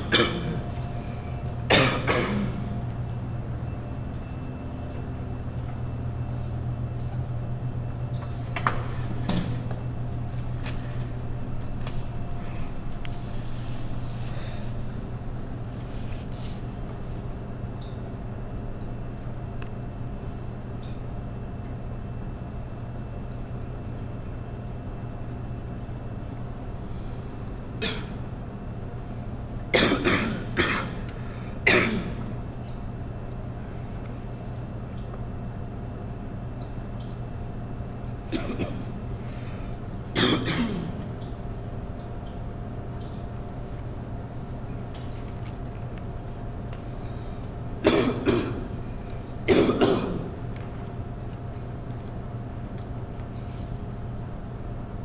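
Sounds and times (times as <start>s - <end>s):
person coughing: 0.0s - 0.7s, 1.7s - 2.8s, 27.8s - 28.2s, 29.7s - 32.3s, 38.3s - 38.9s, 40.2s - 41.0s, 47.8s - 48.7s, 49.5s - 50.4s
steady low hum: 0.0s - 55.0s.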